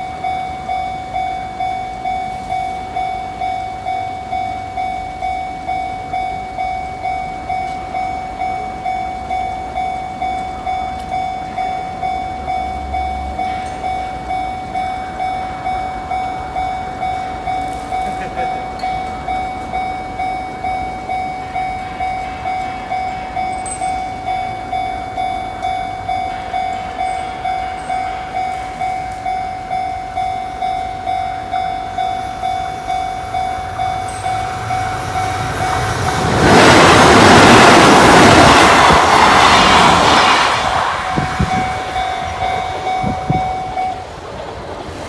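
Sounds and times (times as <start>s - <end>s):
level-crossing warning bell: 0.0s - 45.0s
train passing: 0.0s - 45.0s
wheels knocking on rail joints: 13.3s - 45.0s.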